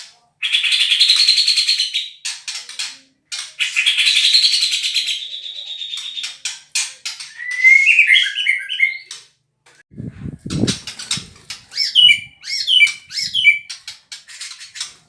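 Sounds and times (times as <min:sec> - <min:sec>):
bird whistled notes: 0:07.3 - 0:09.1.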